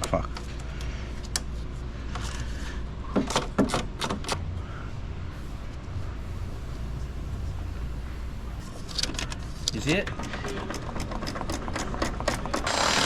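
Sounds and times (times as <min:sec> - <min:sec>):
steady low hum: 0:00.0 - 0:13.0
tools clicking and knocking: 0:03.2 - 0:04.4, 0:08.9 - 0:13.0.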